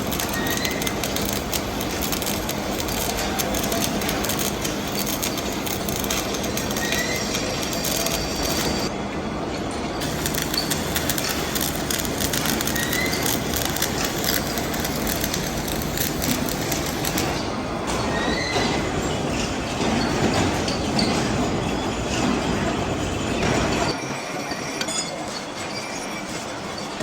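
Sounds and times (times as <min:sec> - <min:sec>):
metal lathe cutting steel: 0:00.0 - 0:08.9, 0:10.0 - 0:17.5.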